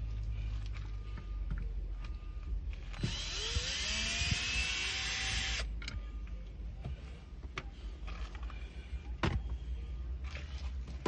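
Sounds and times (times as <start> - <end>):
cordless drill running: 3.0 - 5.7.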